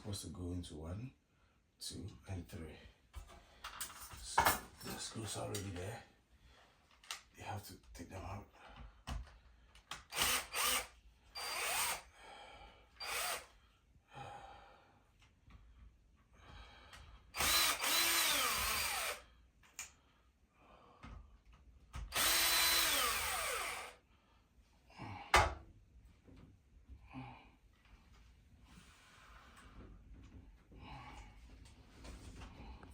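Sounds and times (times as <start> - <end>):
power drill whining: 9.9 - 12.1, 13.0 - 13.6, 17.3 - 19.3, 22.0 - 24.0.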